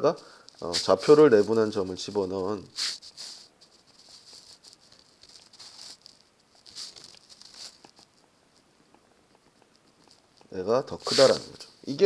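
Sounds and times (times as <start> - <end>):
pen scratching on paper: 11.0 - 11.6.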